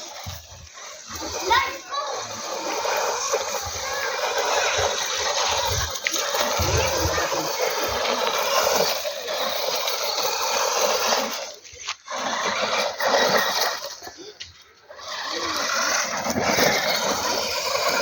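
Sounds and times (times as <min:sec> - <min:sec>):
rc car tyres and drivetrain hissing: 0:00.0 - 0:18.0.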